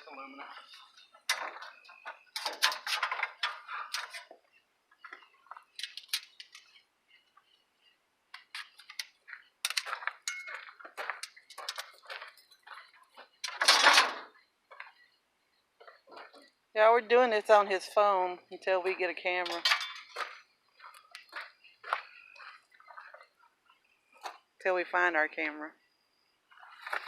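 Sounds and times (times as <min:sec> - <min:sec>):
scrap metal clinking: 0:09.7 - 0:12.0, 0:19.4 - 0:20.4.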